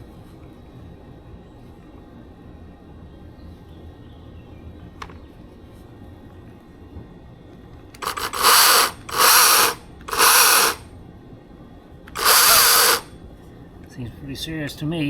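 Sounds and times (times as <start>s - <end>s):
cordless chainsaw revving: 8.0s - 10.8s, 12.1s - 13.1s.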